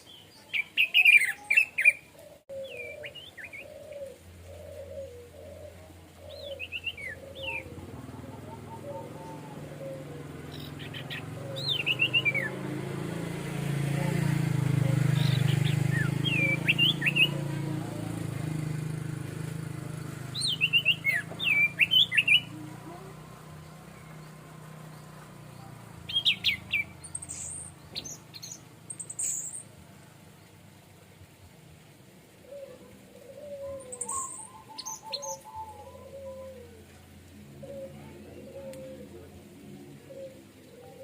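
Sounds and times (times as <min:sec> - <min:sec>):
thrush singing: 0:00.7 - 0:29.7.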